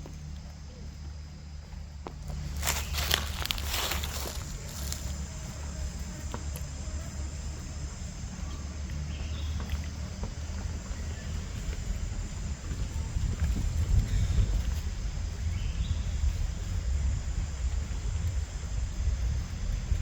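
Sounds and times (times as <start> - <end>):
faint insect buzz: 0.0 - 20.0
crackling or rustling: 2.2 - 5.3.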